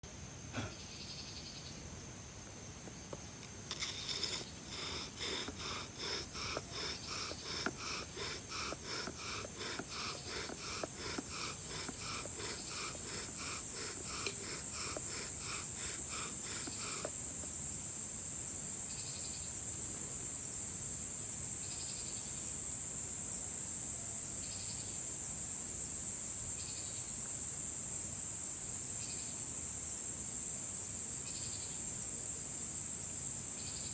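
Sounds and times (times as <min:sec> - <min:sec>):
crickets chirring: 0:00.0 - 0:33.9
bow drill spindle rasping and squeaking: 0:02.8 - 0:17.5.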